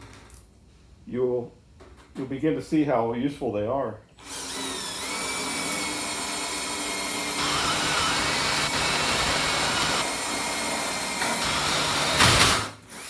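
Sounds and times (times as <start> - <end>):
electric drill drilling metal: 4.2 - 13.0.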